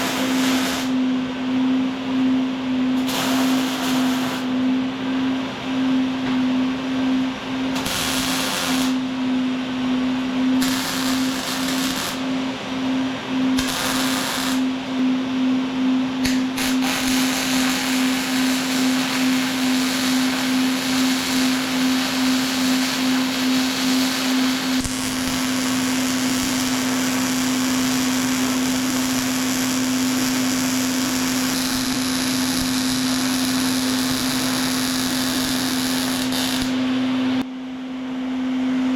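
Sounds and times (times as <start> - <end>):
welding arc crackling and buzzing: 0.0 - 1.0, 3.0 - 4.5, 7.7 - 9.1, 10.6 - 12.3, 13.6 - 14.8, 16.2 - 37.4.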